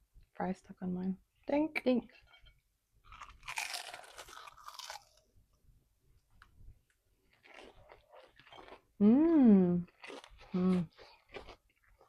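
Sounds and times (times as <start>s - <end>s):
crunchy bite into toast: 3.1s - 5.2s
chewing: 7.3s - 8.9s, 9.9s - 12.0s.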